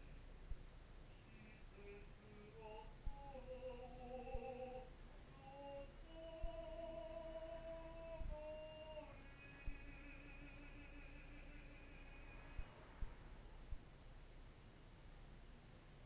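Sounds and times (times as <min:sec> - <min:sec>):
person singing long notes: 0:01.2 - 0:13.6
dull low thumps: 0:12.6 - 0:14.4.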